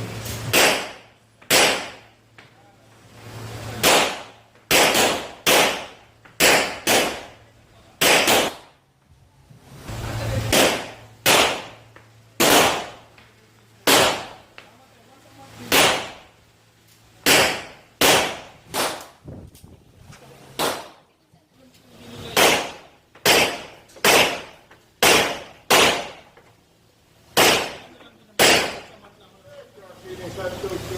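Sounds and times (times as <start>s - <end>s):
pistol shots: 0.5s - 2.1s, 3.8s - 7.4s, 8.0s - 8.8s, 10.5s - 11.8s, 12.4s - 13.0s, 13.8s - 14.5s, 15.7s - 16.3s, 17.2s - 19.2s, 20.6s - 21.0s, 22.4s - 26.3s, 27.3s - 29.0s.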